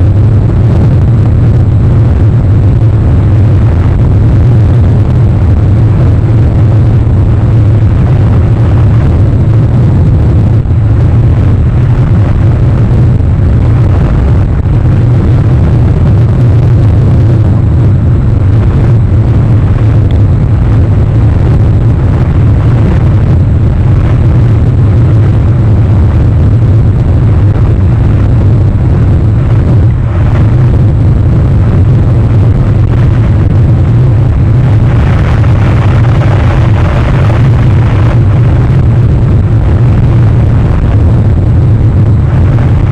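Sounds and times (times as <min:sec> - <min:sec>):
low rumble: 0:00.0 - 0:42.9.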